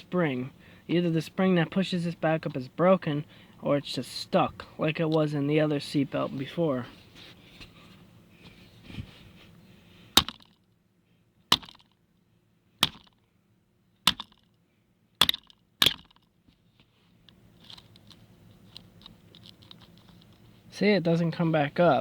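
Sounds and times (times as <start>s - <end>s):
hammer striking metal buckle: 10.2s - 10.6s, 11.5s - 12.0s, 12.8s - 13.2s, 14.1s - 14.4s, 15.2s - 16.2s.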